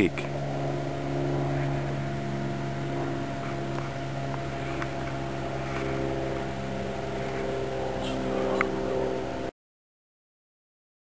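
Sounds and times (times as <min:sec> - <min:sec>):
motor humming: 0:00.0 - 0:09.5.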